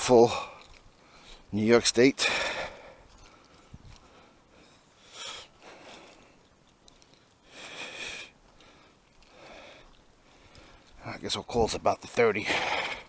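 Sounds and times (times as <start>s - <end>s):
person breathing: 0.3s - 1.5s, 2.2s - 6.5s, 7.4s - 11.0s, 12.5s - 13.0s.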